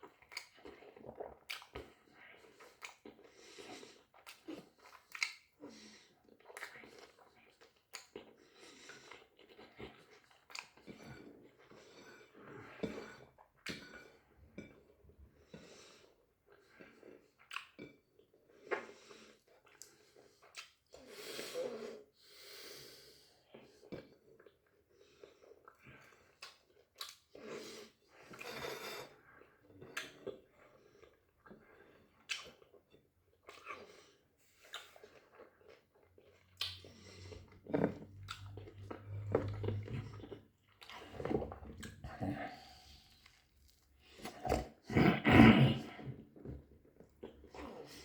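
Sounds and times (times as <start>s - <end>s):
person chewing food: 0.0s - 21.2s, 23.5s - 45.2s, 45.8s - 48.0s
person chewing: 25.5s - 28.5s, 31.0s - 45.2s.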